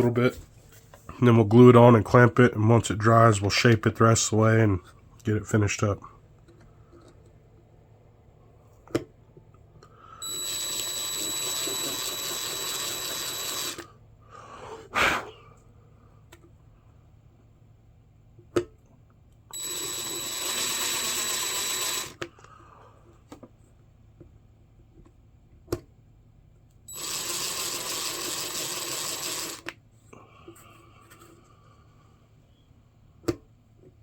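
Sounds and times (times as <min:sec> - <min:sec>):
power drill whining: 0:10.2 - 0:13.9, 0:19.5 - 0:22.3, 0:26.9 - 0:29.7.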